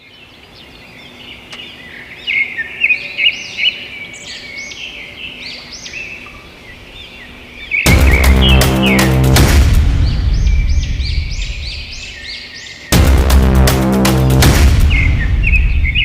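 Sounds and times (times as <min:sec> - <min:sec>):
low background hiss: 0:00.0 - 0:07.9
birds chirping: 0:00.0 - 0:16.0.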